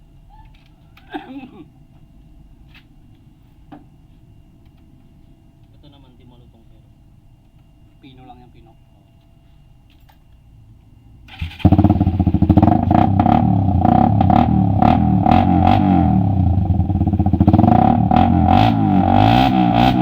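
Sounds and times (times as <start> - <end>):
exhaust cracks: 11.3 - 20.0
motorcycle engine running uneven: 11.4 - 18.9.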